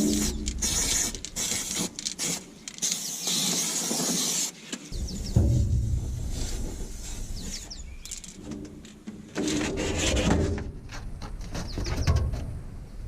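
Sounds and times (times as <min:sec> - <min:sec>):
birds chirping: 0:04.8 - 0:08.4
knocks and handling noise: 0:07.9 - 0:12.6.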